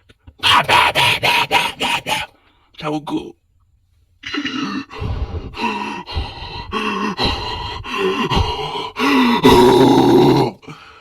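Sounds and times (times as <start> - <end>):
person making wordless vocal sounds: 0.4 - 2.4, 4.2 - 10.8
gasps and breathy noises: 0.4 - 2.6, 4.2 - 11.0.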